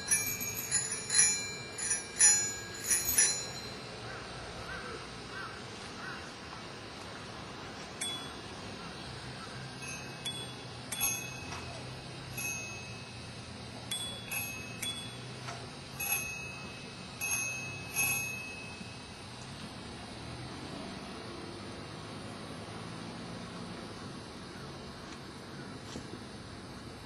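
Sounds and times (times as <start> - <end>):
small high-pitched bells struck: 0.0 - 3.9, 8.0 - 8.7, 9.8 - 19.2.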